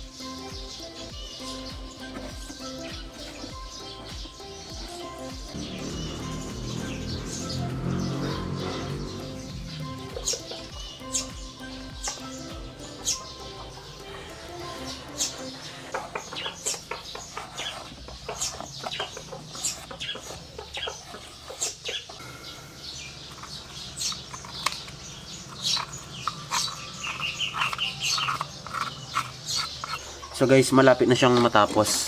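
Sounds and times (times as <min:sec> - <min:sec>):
brush scrubbing paint off metal: 0:15.1 - 0:22.0.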